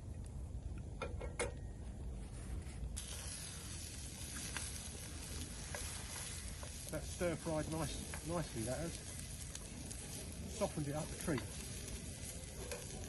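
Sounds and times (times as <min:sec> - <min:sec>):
vegetables sizzling in a pan: 0:03.0 - 0:13.0.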